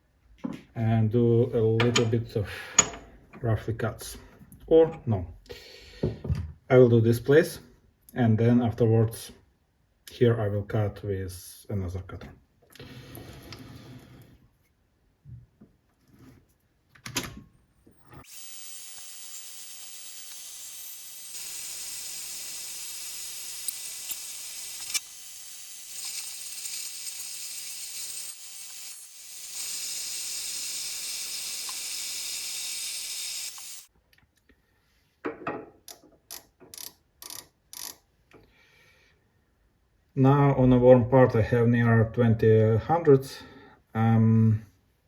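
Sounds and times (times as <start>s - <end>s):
lathe whining: 18.2s - 31.9s.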